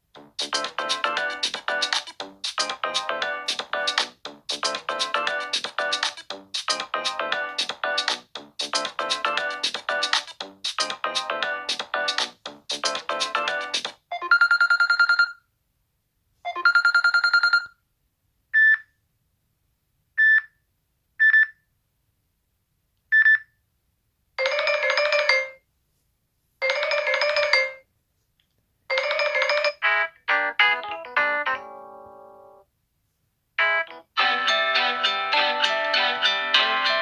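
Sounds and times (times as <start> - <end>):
quick ringtone melody: 12.8 - 15.4, 16.5 - 17.7, 24.4 - 25.6, 26.6 - 27.8, 28.9 - 32.6, 33.6 - 37.0.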